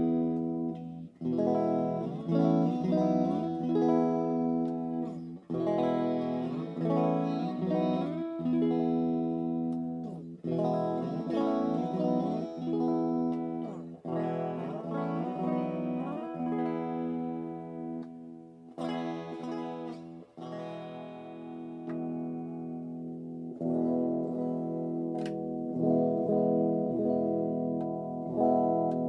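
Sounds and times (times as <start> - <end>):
electric guitar playing: 0.0 - 29.0.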